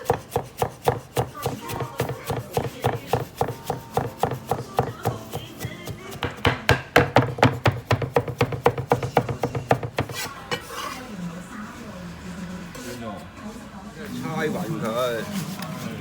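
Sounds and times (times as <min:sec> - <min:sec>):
kitchen utensil knocking: 0:00.9 - 0:10.7.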